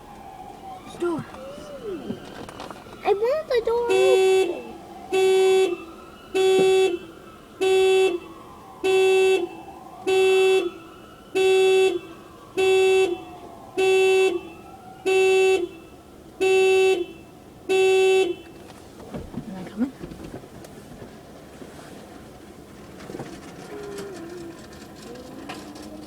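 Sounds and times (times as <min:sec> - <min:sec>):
car horn short blasts: 0:03.9 - 0:05.8, 0:06.4 - 0:07.0, 0:16.4 - 0:18.6.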